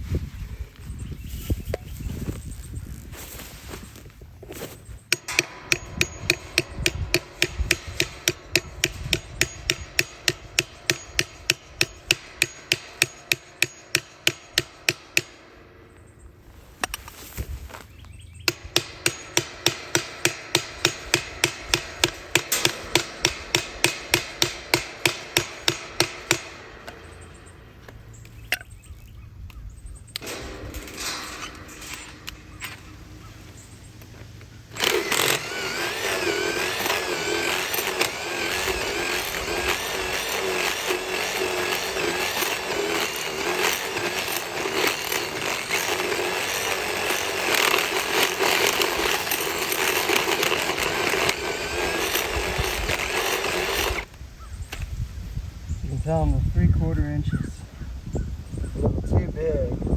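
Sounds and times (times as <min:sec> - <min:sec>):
rapid metallic hammer blows: 0:05.0 - 0:16.4, 0:18.4 - 0:28.7, 0:30.0 - 0:54.1.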